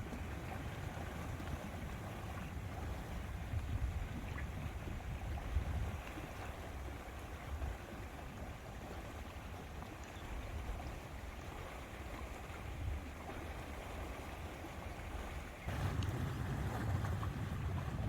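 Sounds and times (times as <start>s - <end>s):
wind rumbling on microphone: 0.0s - 9.6s, 10.4s - 18.0s
lake water washing: 0.0s - 18.0s.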